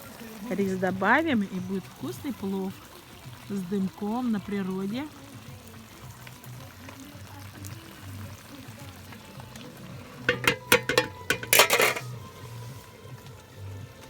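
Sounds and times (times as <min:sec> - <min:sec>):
faint frying sizzle: 0:00.0 - 0:14.0
metal utensil stirring in a wok: 0:10.3 - 0:12.1
clinks and scrapes against metal: 0:10.3 - 0:12.2.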